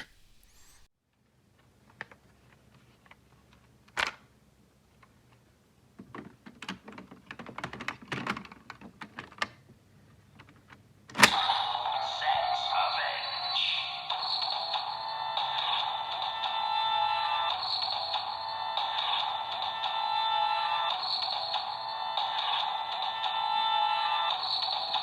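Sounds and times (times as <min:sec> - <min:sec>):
electronic sound and music: 0:11.3 - 0:25.0.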